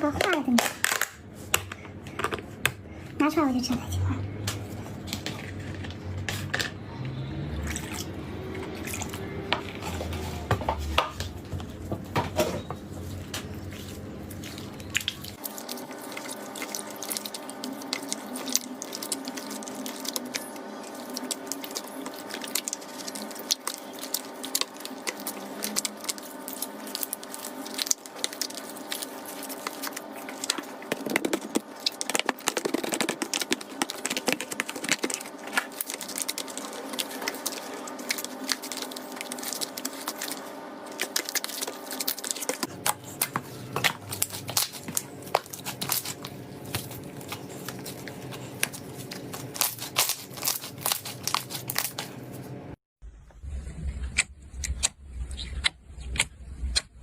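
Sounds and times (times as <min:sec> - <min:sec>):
slime squished by hand: 0:13.8 - 0:52.1.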